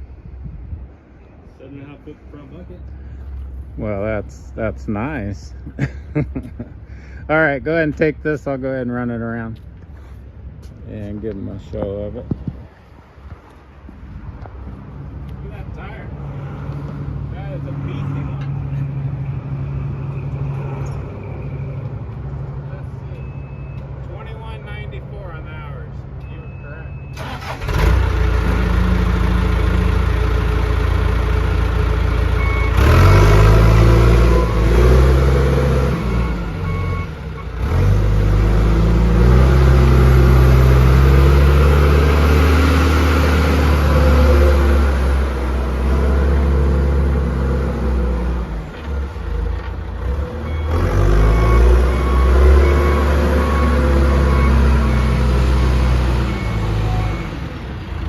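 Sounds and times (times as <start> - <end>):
reversing alarm beeping: 23.1 - 23.9, 26.2 - 27.3, 32.1 - 37.6, 50.4 - 57.5
diesel engine revving: 27.1 - 58.0.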